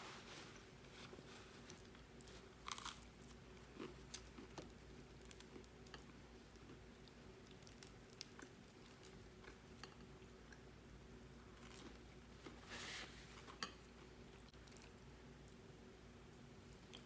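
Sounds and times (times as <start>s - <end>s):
low steady hum: 0.0s - 17.0s
person chewing: 1.6s - 10.6s.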